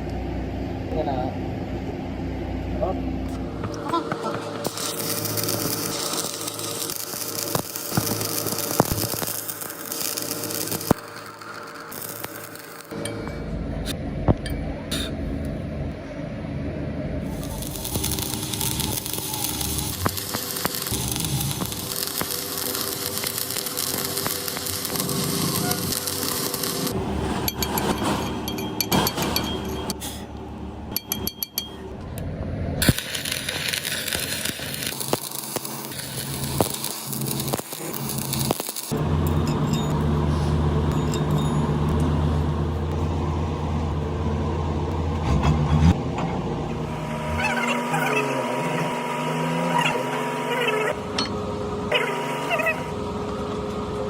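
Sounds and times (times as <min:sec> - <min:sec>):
heavy machinery humming: 0:00.0 - 0:54.0
arc welding crackling: 0:03.6 - 0:13.0, 0:17.2 - 0:28.3, 0:32.8 - 0:39.7
sharp metallic clinks: 0:27.5 - 0:30.0, 0:30.9 - 0:31.9, 0:39.2 - 0:40.1, 0:40.9 - 0:42.1.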